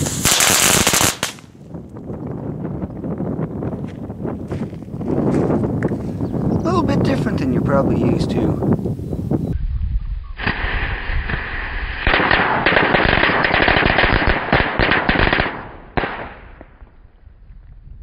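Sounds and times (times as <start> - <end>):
firecrackers cracking: 0.0 - 1.6, 10.4 - 17.0.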